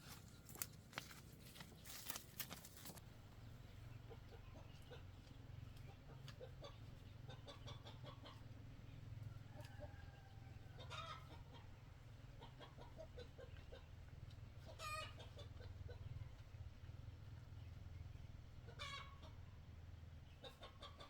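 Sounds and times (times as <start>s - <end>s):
chickens clucking: 2.4s - 21.0s
loud chicken call: 14.8s - 15.2s.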